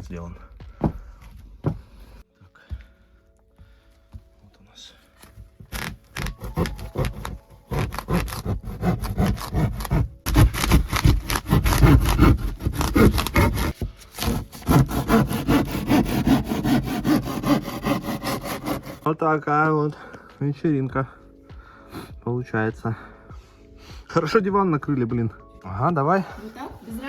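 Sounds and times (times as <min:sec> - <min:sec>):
hand saw cutting wood: 0:05.7 - 0:19.1.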